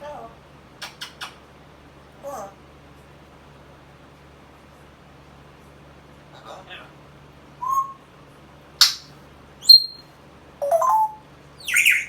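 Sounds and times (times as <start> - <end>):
parrot whistling and squeaking: 7.6 - 8.0, 8.8 - 10.0, 10.6 - 12.0
parrot screech: 10.9 - 12.0.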